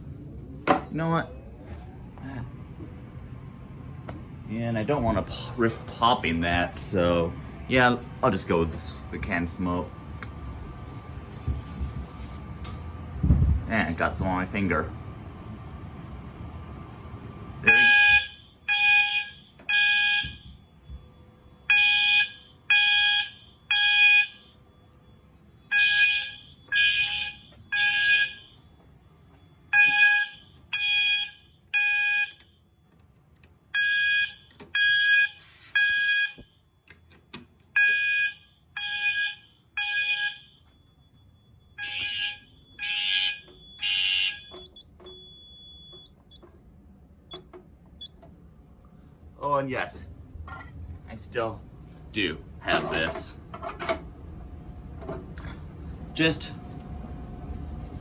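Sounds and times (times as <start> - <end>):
fire alarm horn beeping: 17.6 - 37.0, 37.7 - 46.6.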